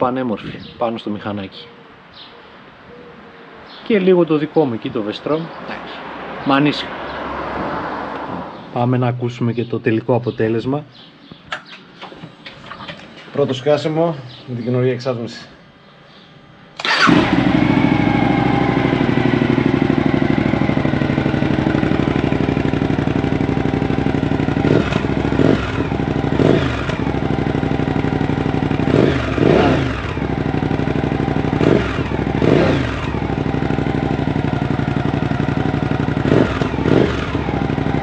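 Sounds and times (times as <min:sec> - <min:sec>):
motorcycle engine idling: 0:15.8 - 0:38.0
engine revving in throttle blips: 0:16.8 - 0:38.0.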